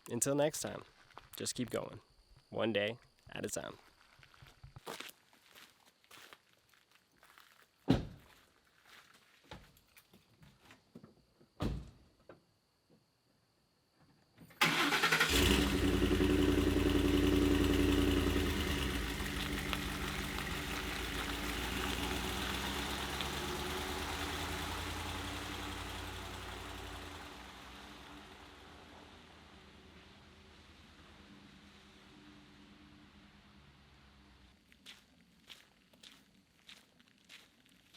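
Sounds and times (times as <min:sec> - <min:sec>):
thud: 0:11.6 - 0:12.0
vehicle engine starting and revving: 0:14.6 - 0:34.5.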